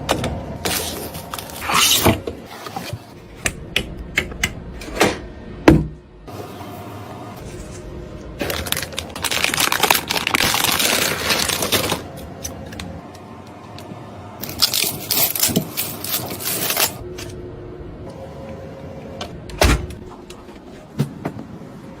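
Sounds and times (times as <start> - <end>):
packaging rustling: 8.4 - 12.2.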